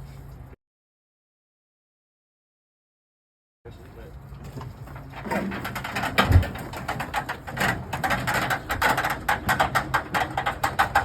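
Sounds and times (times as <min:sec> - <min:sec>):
washing machine clattering: 0:05.0 - 0:11.0.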